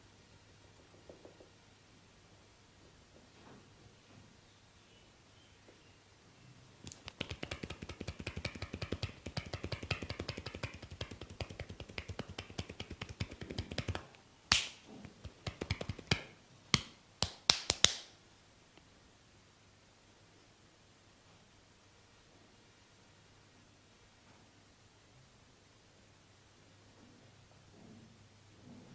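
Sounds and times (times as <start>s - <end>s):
fingertips tapping on forehead: 6.9s - 18.0s
sharp slaps: 6.9s - 18.1s.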